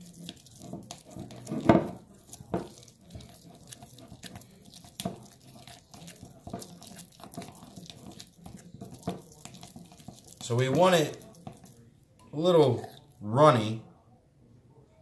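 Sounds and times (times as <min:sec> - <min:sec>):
spatula knocking bowl: 0:00.0 - 0:11.8
spatula squelching wet mixture: 0:00.0 - 0:13.8.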